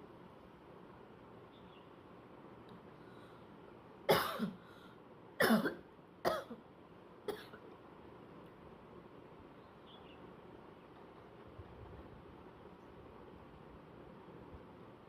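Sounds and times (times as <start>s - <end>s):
person coughing: 4.1s - 4.6s, 5.4s - 6.6s, 7.3s - 7.6s.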